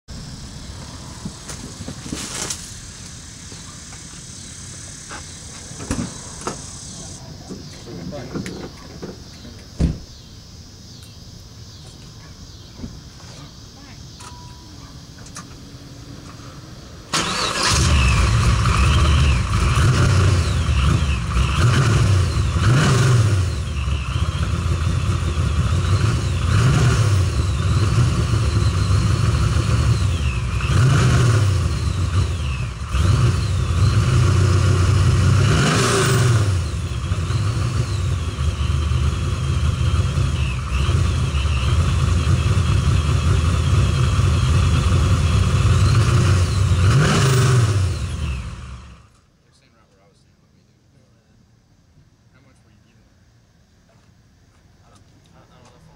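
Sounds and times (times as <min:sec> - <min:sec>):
car engine starting and idling: 0:00.1 - 0:10.6, 0:14.1 - 0:49.3
supercharger whine: 0:00.1 - 0:49.3
engine throttle blips: 0:14.2 - 0:49.2.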